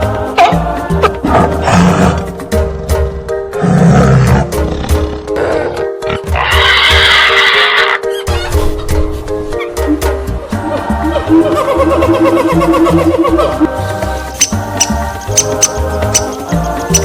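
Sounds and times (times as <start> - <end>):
background music: 0.0 - 17.0
tiger roaring and growling: 1.0 - 8.0.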